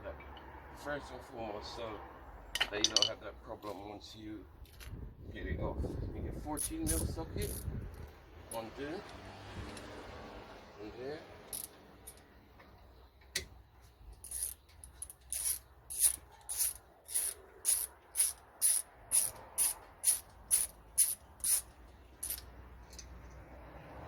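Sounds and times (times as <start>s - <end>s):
socket ratchet clicking: 14.2s - 23.0s.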